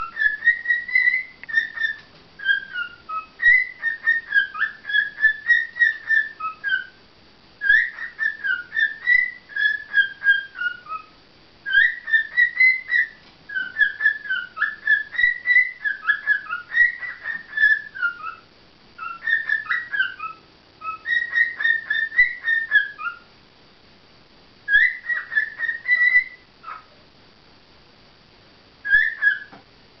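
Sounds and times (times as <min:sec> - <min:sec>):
lovebirds chirping and warbling: 0:00.0 - 0:23.4, 0:24.7 - 0:27.0, 0:28.8 - 0:29.7.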